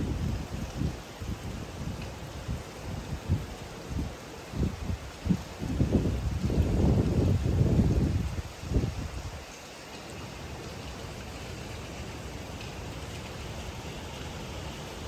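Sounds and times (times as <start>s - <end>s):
wind buffeting microphone: 0.0s - 9.5s
heavy rain hiss: 0.0s - 15.0s.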